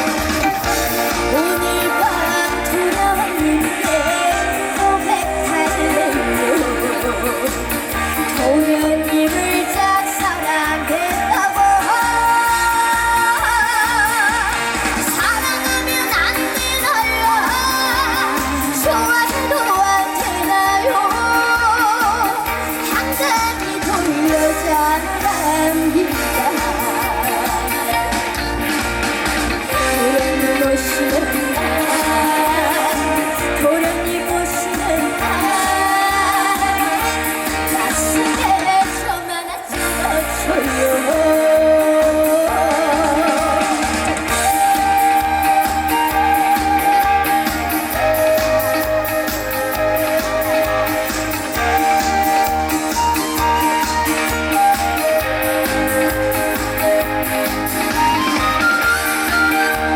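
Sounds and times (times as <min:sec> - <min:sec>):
backing music with steady beat: 0:00.0 - 0:59.9
woman singing with vibrato: 0:00.0 - 0:59.9.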